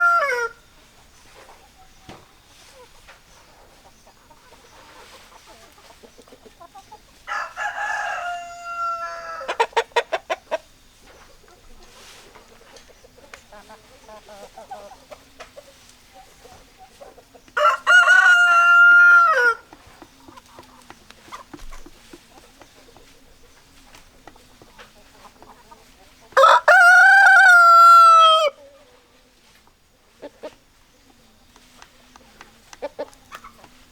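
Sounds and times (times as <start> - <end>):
rooster crowing: 0.0 - 0.6, 7.3 - 9.6, 17.6 - 19.6, 26.4 - 28.6
hens clucking quietly: 0.0 - 33.9.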